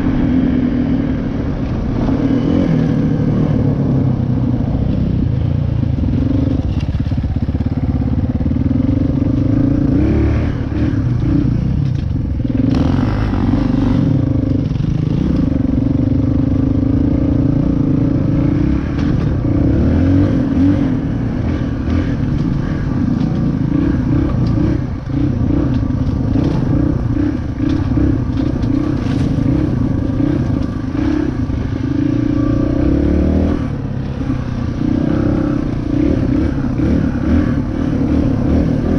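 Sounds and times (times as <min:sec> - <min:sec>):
bike rattling: 0:04.2 - 0:09.7, 0:10.5 - 0:32.9
dirt bike engine revving: 0:08.6 - 0:11.6, 0:16.9 - 0:38.9.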